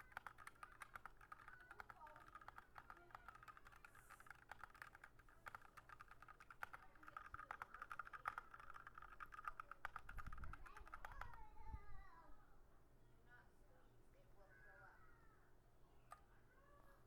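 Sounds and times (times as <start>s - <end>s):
fast typing on mechanical keyboard: 0.0s - 11.4s.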